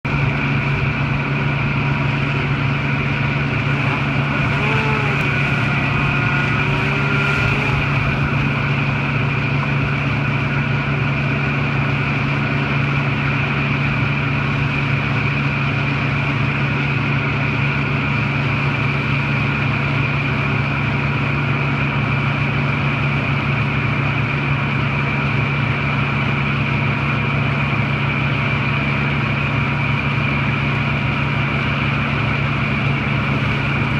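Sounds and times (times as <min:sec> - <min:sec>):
engine droning with whine: 0:00.0 - 0:33.9
faint sound rising and falling in pitch: 0:03.3 - 0:09.4.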